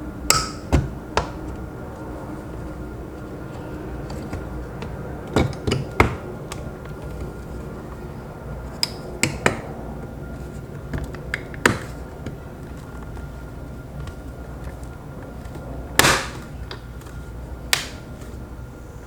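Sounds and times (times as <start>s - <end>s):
plastic trim clicks and taps: 17.7s - 18.0s.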